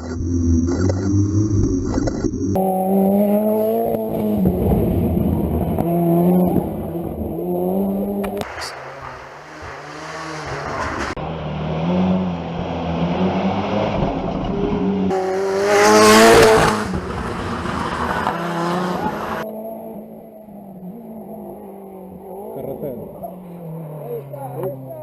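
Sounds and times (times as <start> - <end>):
rally car engine revving: 0.0 - 25.0.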